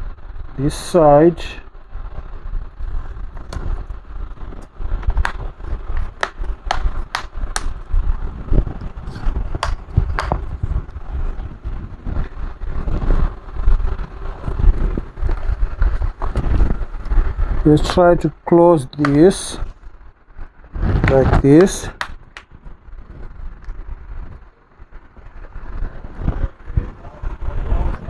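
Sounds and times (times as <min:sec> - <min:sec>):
low rumble: 0:00.0 - 0:28.0
plastic casing clicks and taps: 0:06.2 - 0:07.7.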